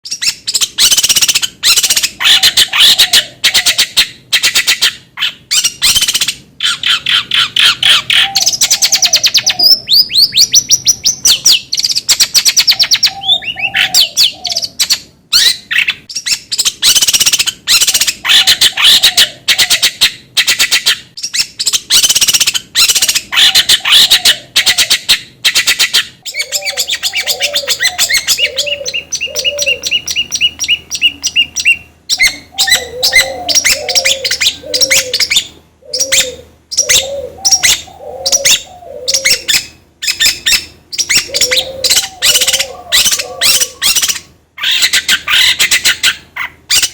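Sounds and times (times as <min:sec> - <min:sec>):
shrike harsh chattering song: 0:00.1 - 0:46.9.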